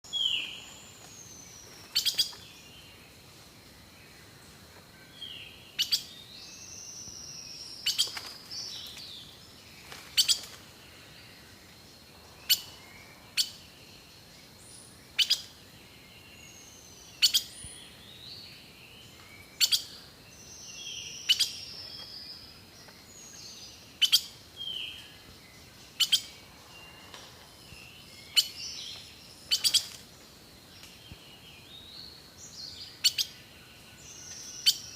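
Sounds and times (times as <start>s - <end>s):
birdsong with chirps: 0.0s - 34.9s.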